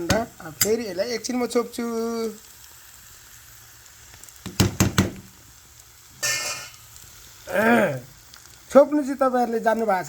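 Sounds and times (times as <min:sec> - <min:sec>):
fish sizzling in a frying pan: 0:00.0 - 0:10.0
metal lid clattering on pan: 0:06.2 - 0:06.8.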